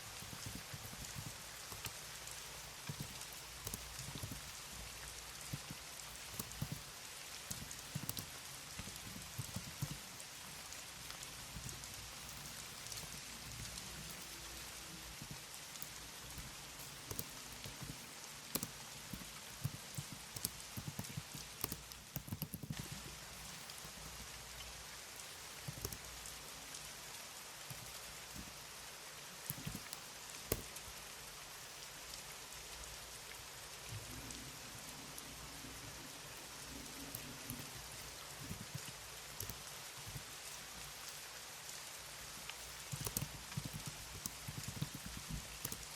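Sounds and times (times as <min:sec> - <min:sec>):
steady background hiss: 0:00.0 - 0:45.9
keyboard key clicks: 0:00.2 - 0:24.3, 0:25.2 - 0:26.1, 0:29.5 - 0:30.8, 0:36.4 - 0:41.2, 0:42.5 - 0:45.9.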